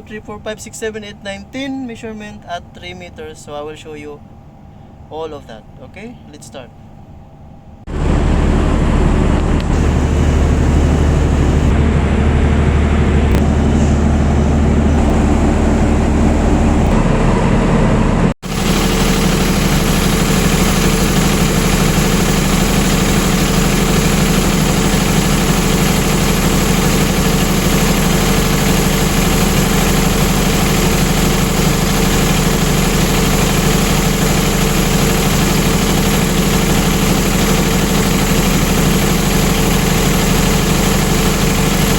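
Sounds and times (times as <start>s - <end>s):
generator engine drone: 0.0s - 41.9s
thin high whine: 13.1s - 41.9s.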